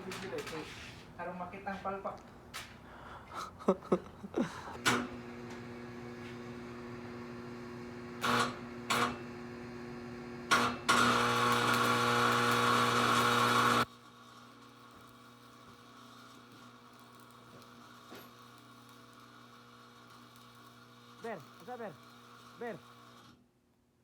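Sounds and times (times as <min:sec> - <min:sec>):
welding machine humming: 0:04.8 - 0:23.4
welding arc crackling: 0:07.5 - 0:09.2, 0:10.1 - 0:23.3.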